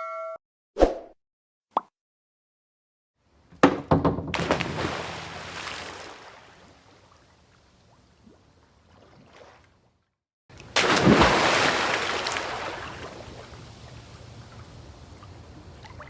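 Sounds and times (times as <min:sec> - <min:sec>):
big splash into pool water: 0:04.3 - 0:07.0, 0:10.7 - 0:13.7.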